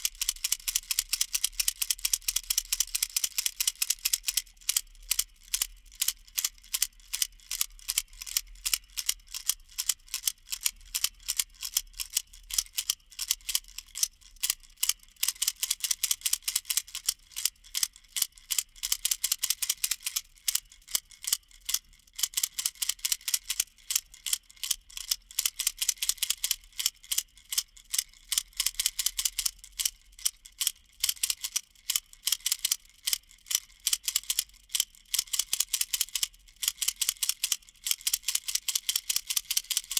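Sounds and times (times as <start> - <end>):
baby rattle clicking: 0.0 - 39.9.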